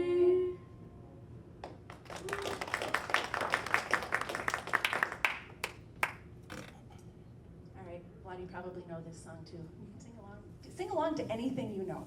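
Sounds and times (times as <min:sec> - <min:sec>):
small audience applauding: 0:01.6 - 0:06.3.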